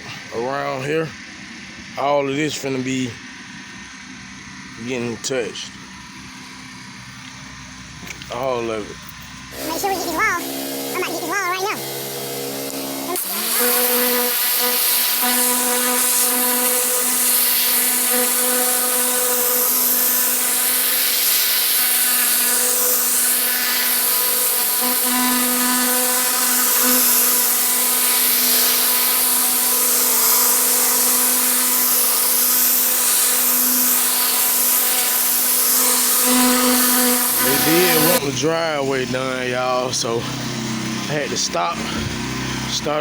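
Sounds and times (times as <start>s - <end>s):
pressure washer hum: 4.7s - 43.0s
high-pressure spray hissing: 9.6s - 38.3s.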